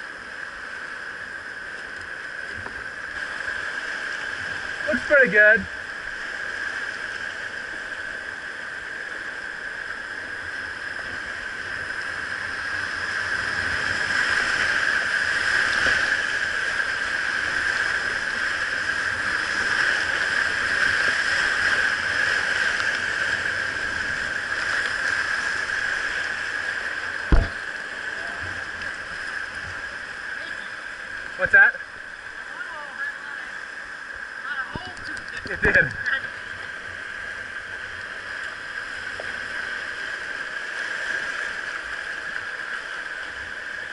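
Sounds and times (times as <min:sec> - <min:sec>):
river rapids rushing: 0:00.1 - 0:43.9
sharp knock: 0:27.3 - 0:27.6.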